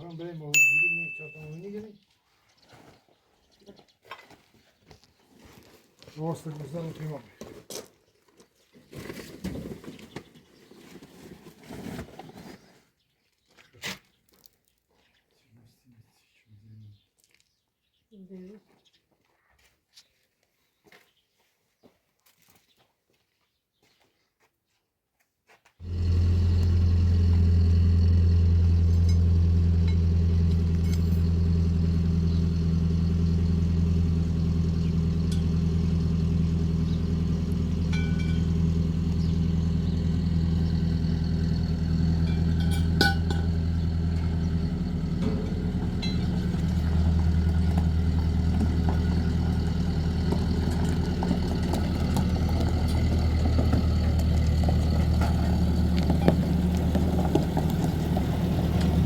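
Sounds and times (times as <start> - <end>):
engine humming: 25.8 - 59.0.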